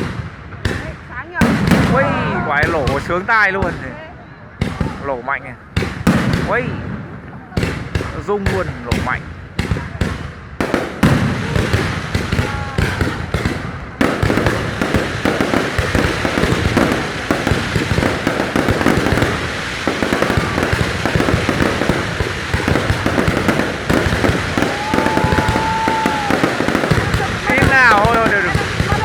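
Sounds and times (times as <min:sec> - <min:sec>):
fireworks crackle: 0:05.7 - 0:29.0
fireworks shells bursting: 0:10.6 - 0:29.0.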